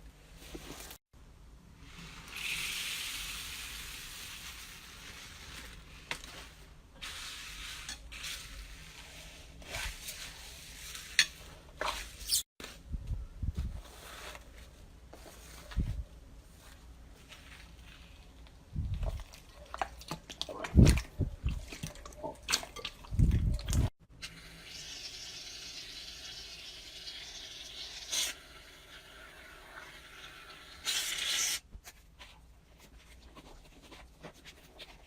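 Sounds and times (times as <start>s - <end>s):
slime squelching by hand: 17.3s - 23.9s.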